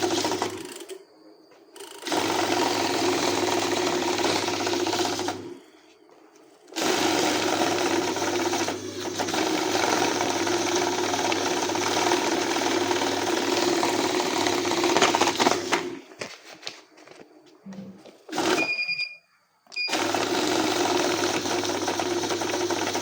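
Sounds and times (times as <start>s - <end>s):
banknote counting machine rattling: 0.0s - 1.0s, 2.0s - 5.5s, 6.8s - 15.9s, 19.9s - 23.0s.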